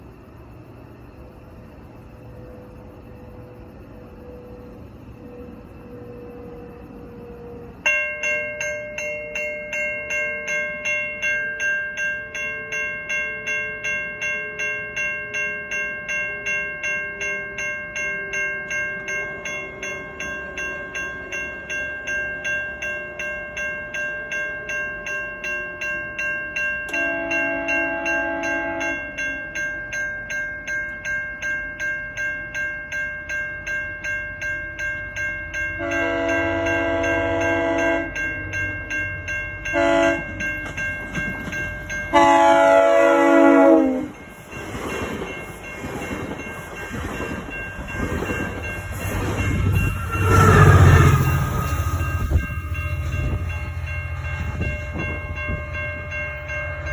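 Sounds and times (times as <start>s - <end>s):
railway warning bell ringing: 0.0s - 56.9s
locomotive air horn chord: 26.9s - 29.0s, 35.8s - 38.2s, 39.7s - 40.3s, 42.1s - 44.2s.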